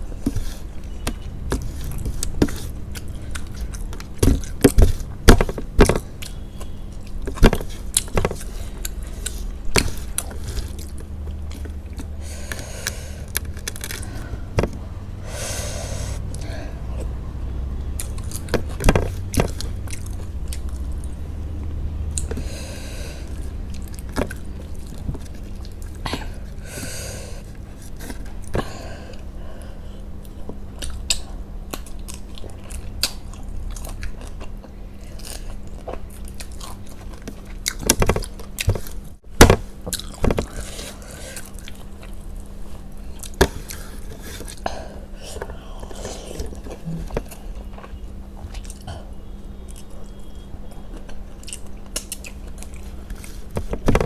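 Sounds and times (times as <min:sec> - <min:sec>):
person chewing and biting food: 0:00.1 - 0:14.8, 0:17.9 - 0:21.2, 0:39.8 - 0:44.6, 0:45.4 - 0:48.9.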